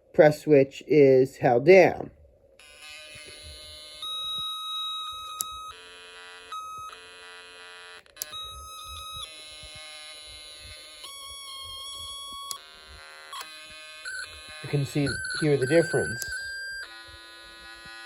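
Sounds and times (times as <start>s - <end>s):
electronic keyboard notes: 8.2s - 17.0s.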